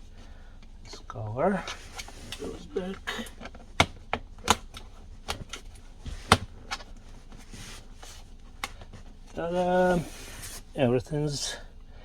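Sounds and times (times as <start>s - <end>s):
plastic trim clicking and snapping: 3.2s - 6.9s.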